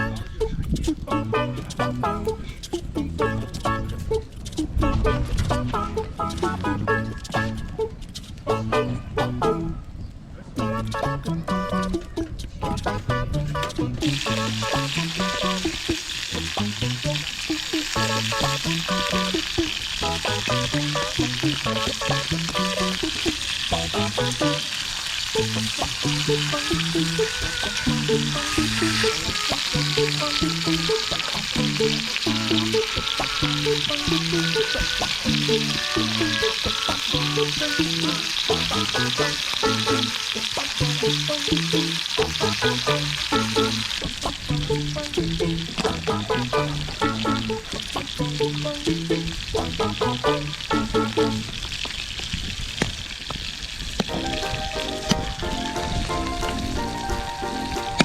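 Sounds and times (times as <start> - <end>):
plucked melody music: 0.0 - 9.9, 10.6 - 51.6, 54.0 - 58.0
meat sizzling on a grill: 14.0 - 58.0.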